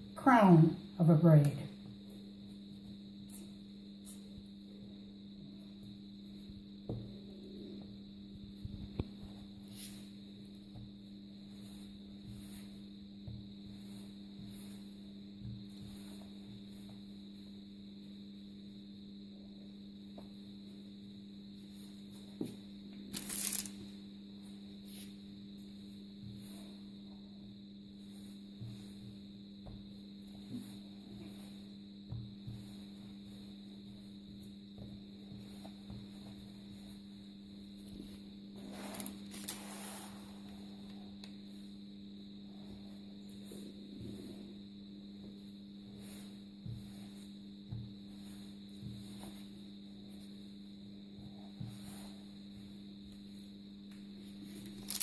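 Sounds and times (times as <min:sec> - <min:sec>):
steady electrical hum: 0:00.0 - 0:55.0
dough handling noises: 0:01.4 - 0:18.8, 0:19.5 - 0:55.0
dough rustling scrape: 0:11.4 - 0:17.0, 0:38.0 - 0:40.8, 0:45.4 - 0:47.4.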